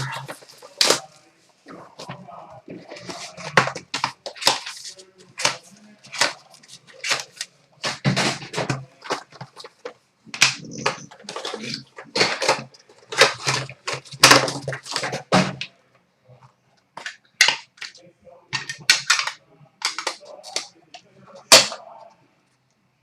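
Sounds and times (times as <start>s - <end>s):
plastic wrap crackling and tearing: 0.0s - 1.4s, 2.8s - 15.3s.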